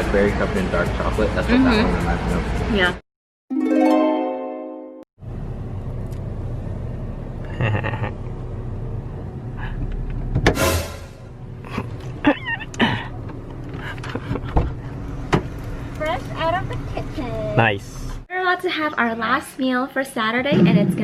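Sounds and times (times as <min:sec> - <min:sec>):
plucked musical note: 0:03.5 - 0:05.0.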